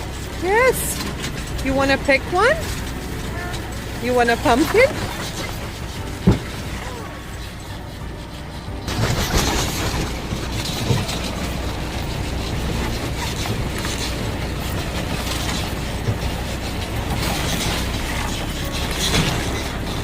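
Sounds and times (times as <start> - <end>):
tractor engine running: 0.0 - 20.0
wagon rattling and clattering: 0.0 - 20.0.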